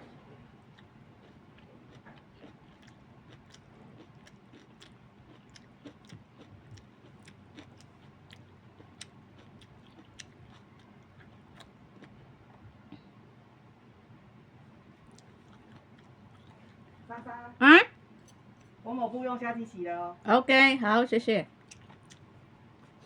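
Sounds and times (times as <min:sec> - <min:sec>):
person chewing food: 0:00.1 - 0:13.0, 0:14.8 - 0:17.1, 0:21.6 - 0:23.0.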